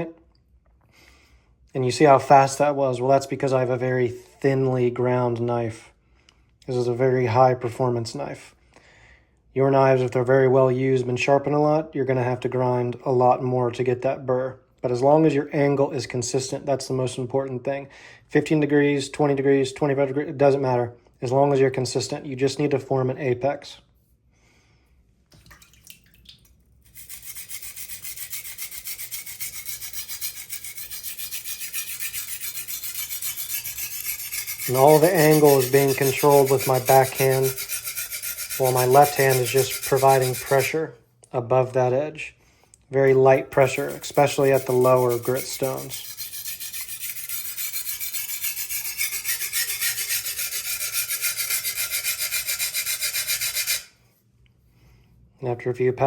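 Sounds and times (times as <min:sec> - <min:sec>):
knife scraping on whetstone: 0:26.9 - 0:40.8, 0:43.1 - 0:53.9.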